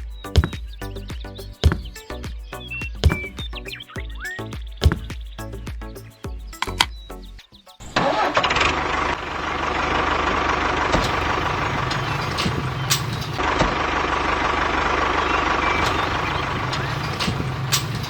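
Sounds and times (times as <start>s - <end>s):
vehicle engine running: 8.0s - 18.0s.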